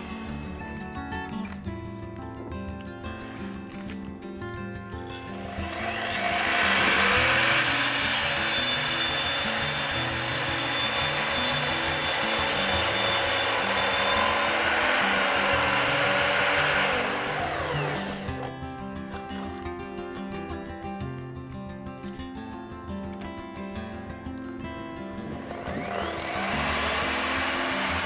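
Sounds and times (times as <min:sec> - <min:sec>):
miter saw cutting: 0:00.0 - 0:01.6, 0:05.3 - 0:18.5, 0:25.2 - 0:28.0.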